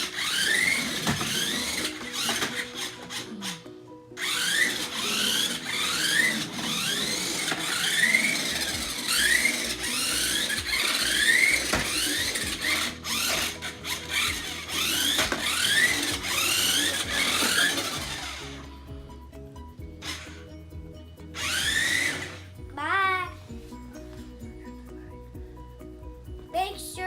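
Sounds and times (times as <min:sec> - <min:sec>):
toy car electric motor whining: 0:00.0 - 0:19.0, 0:20.0 - 0:20.5, 0:21.4 - 0:22.6.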